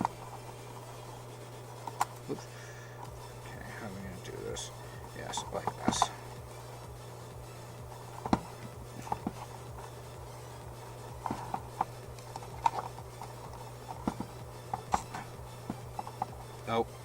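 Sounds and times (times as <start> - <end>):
steady low hum: 0.0 - 17.0
plastic parts clicking and tapping: 5.2 - 6.1, 11.1 - 16.4.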